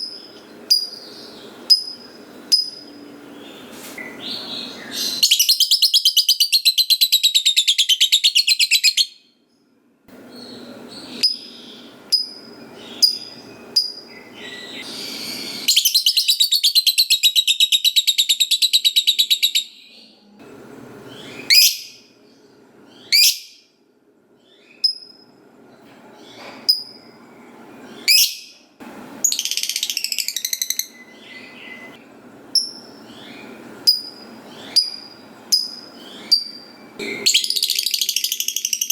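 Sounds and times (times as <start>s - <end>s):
bird chattering trills: 10.3s - 19.8s.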